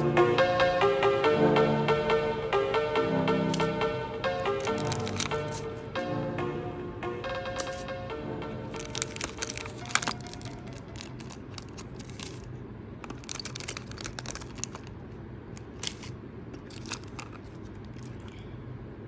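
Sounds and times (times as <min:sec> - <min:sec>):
steady low hum: 0:00.0 - 0:19.0
packaging crinkling and rustling: 0:04.5 - 0:05.8, 0:07.6 - 0:07.8, 0:08.7 - 0:18.4.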